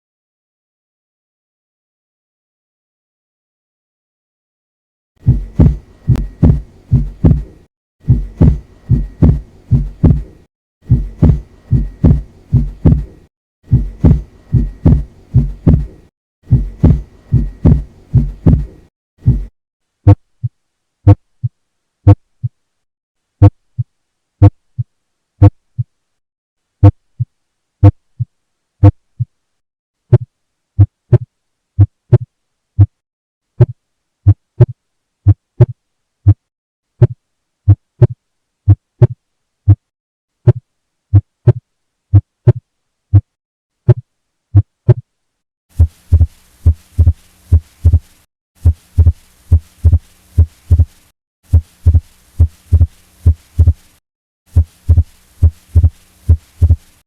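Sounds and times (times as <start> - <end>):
heartbeat lub-dub: 5.2 - 19.5, 40.4 - 43.3, 45.8 - 53.9, 54.5 - 56.9
low hum: 5.2 - 19.5
steady hiss: 45.7 - 57.0.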